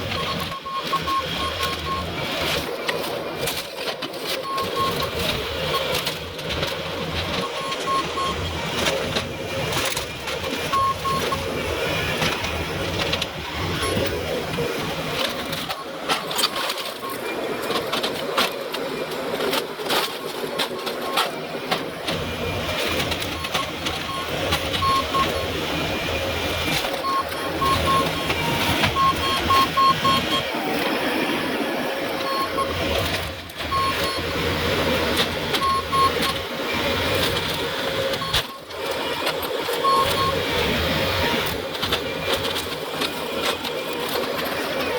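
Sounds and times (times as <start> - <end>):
heavy equipment clatter: 0.0 - 30.9, 32.1 - 44.9
short beeps: 0.2 - 2.1, 4.4 - 5.1, 10.8 - 11.5, 23.2 - 25.5, 27.0 - 30.5, 32.2 - 32.8, 33.6 - 34.4, 35.6 - 36.4, 38.2 - 38.7, 39.8 - 40.4.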